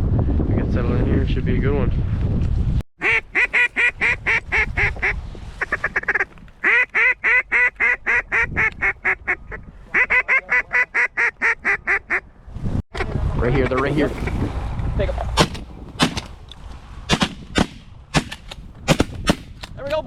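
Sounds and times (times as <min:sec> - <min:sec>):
goose call honks and clucks: 0:03.0 - 0:12.3.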